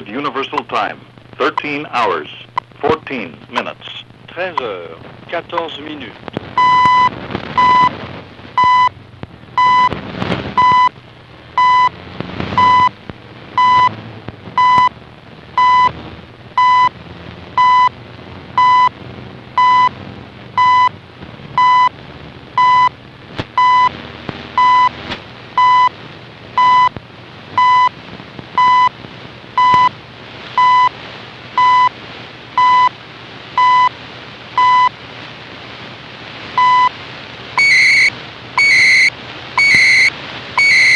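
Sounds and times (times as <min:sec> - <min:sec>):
radio static: 0:00.0 - 0:40.9
short time signal beeps: 0:06.6 - 0:07.9, 0:08.6 - 0:08.9, 0:09.6 - 0:09.9, 0:10.6 - 0:10.9, 0:11.6 - 0:11.9, 0:12.6 - 0:12.9, 0:13.6 - 0:13.9, 0:14.6 - 0:14.9, 0:15.6 - 0:15.9, 0:17.6 - 0:17.9, 0:18.6 - 0:18.9, 0:19.6 - 0:19.9, 0:20.6 - 0:20.9, 0:21.6 - 0:21.9, 0:22.6 - 0:22.9, 0:24.6 - 0:24.9, 0:26.6 - 0:26.9, 0:29.6 - 0:29.9, 0:31.6 - 0:31.9, 0:32.6 - 0:32.9, 0:33.6 - 0:33.9, 0:34.6 - 0:34.9, 0:36.6 - 0:36.9, 0:37.6 - 0:40.9.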